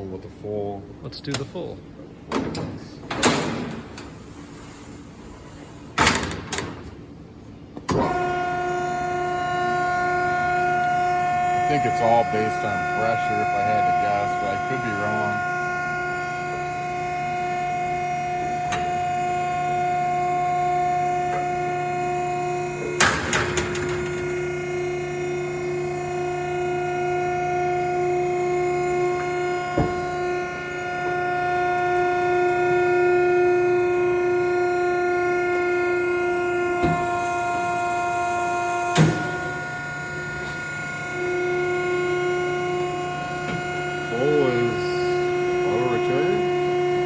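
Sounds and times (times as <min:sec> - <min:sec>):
hydraulic pump humming: 0:01.2 - 0:47.0.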